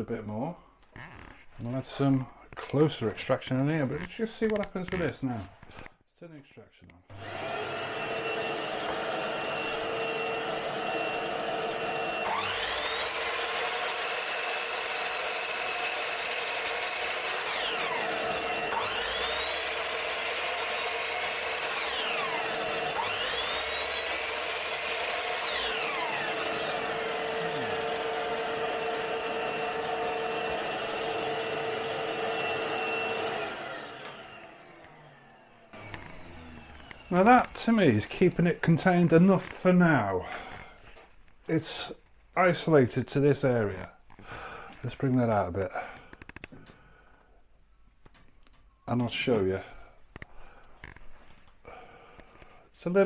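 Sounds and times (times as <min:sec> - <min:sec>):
mitre saw motor spinning up: 0:07.1 - 0:39.8
shop vac whining: 0:07.1 - 0:47.0.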